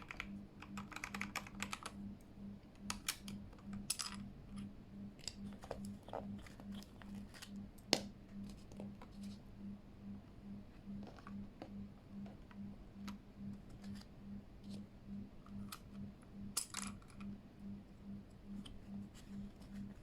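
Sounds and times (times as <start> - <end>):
plastic keyboard parts clicking: 0.0 - 2.0
low pulsing hum: 0.0 - 20.0.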